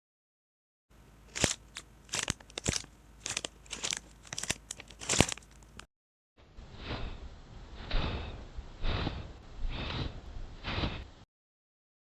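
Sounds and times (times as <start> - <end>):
sharp crisp crunches: 1.3 - 5.9.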